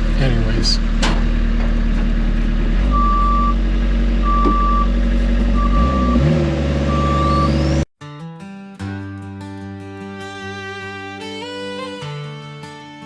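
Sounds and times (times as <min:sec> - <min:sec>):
backup alarm beeping: 0:02.9 - 0:03.6, 0:04.2 - 0:04.9, 0:05.6 - 0:07.8
music: 0:08.0 - 0:13.0.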